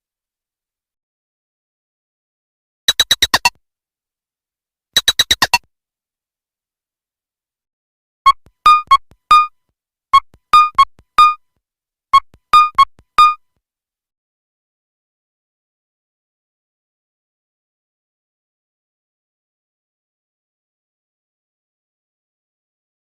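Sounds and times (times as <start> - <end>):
plucked synth ringtone: 8.6 - 9.5, 10.6 - 11.4, 12.6 - 13.4
glassy clicking ringtone notes: 8.7 - 9.5, 10.2 - 11.4, 12.2 - 13.4.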